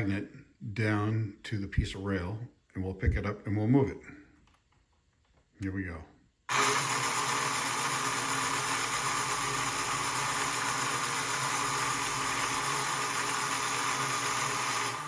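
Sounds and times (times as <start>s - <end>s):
electric motor hum with whine: 6.5s - 15.0s.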